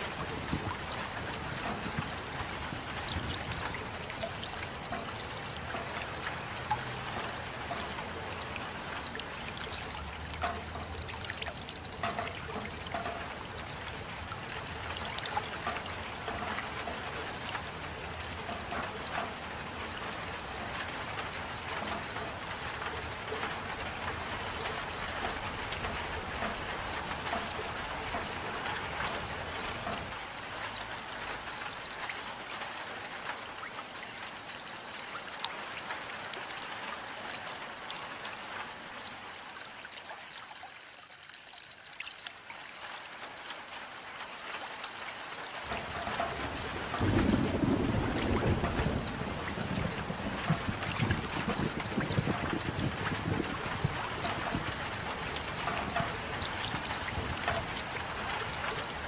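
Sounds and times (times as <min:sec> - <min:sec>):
rain pattering: 0:00.0 - 0:59.0
water trickling and dripping: 0:00.0 - 0:59.0.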